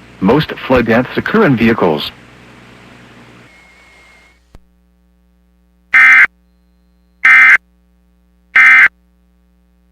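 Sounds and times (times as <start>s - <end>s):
faint hiss: 3.2s - 4.6s
buzzy digital data bursts: 6.0s - 6.3s, 7.2s - 7.6s, 8.6s - 8.9s.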